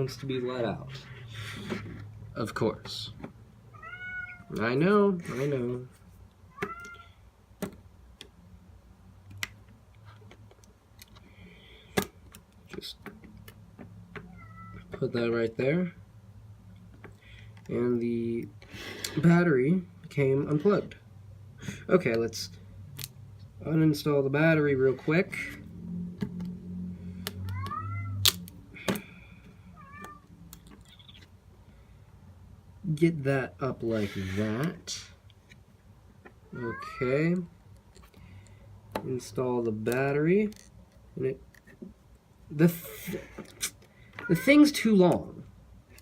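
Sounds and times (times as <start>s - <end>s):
cat meowing: 3.7s - 4.6s, 6.5s - 7.2s, 14.3s - 14.9s, 27.4s - 28.2s, 29.7s - 31.2s, 36.5s - 37.2s.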